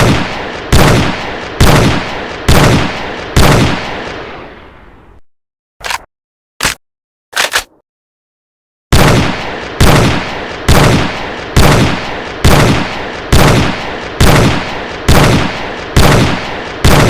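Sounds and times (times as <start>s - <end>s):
rifle shots with echo: 0.0s - 4.5s, 8.9s - 17.0s.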